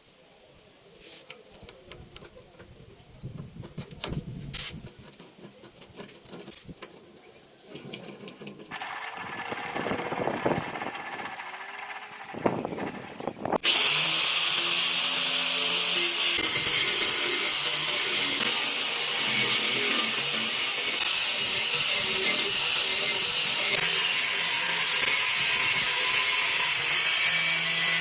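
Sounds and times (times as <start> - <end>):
angle grinder whining: 7.8 - 28.0.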